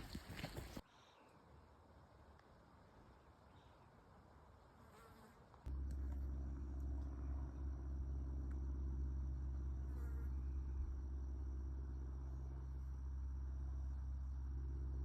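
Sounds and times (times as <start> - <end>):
steady low buzz: 5.7 - 15.0.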